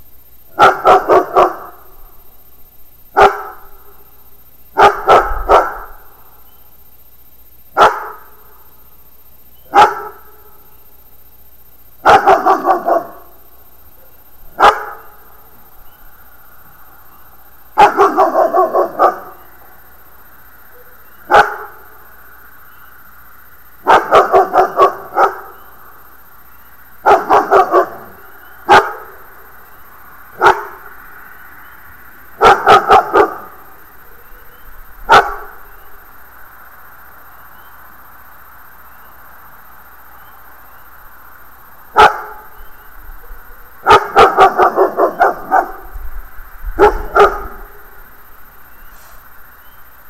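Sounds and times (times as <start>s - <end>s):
dog barking: 0.5s - 1.9s, 3.1s - 4.0s, 4.8s - 6.1s, 7.8s - 8.4s, 9.7s - 10.6s, 12.0s - 13.4s, 14.0s - 15.2s, 17.8s - 19.5s, 20.7s - 22.0s, 23.8s - 25.6s, 27.0s - 29.2s, 30.4s - 30.9s, 32.4s - 34.4s, 35.1s - 35.6s, 41.9s - 42.6s, 43.2s - 46.0s, 46.8s - 47.9s.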